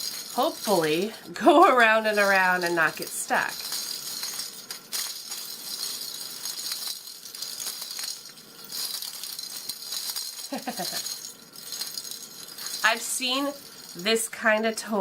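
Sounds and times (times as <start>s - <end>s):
balls rattling around a track: 0.0s - 15.0s.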